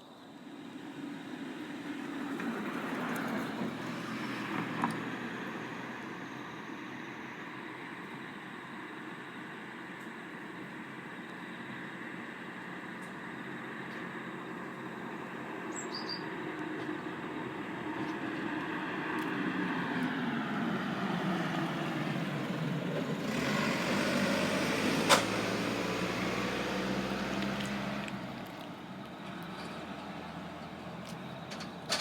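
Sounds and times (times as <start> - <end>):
vehicle passing by: 17.8 - 31.6.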